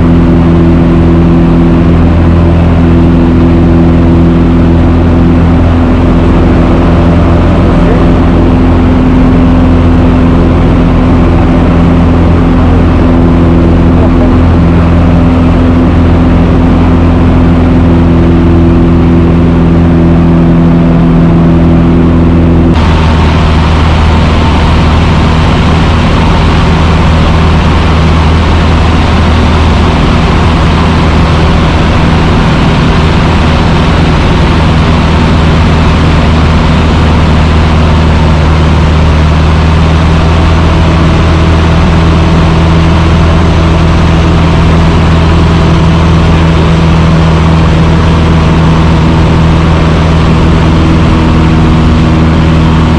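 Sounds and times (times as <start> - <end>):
propeller plane engine drone: 0.0 - 52.9.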